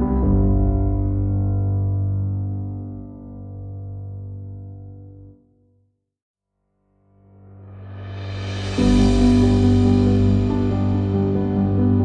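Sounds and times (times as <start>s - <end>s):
ambient chords with bass: 8.0s - 12.0s.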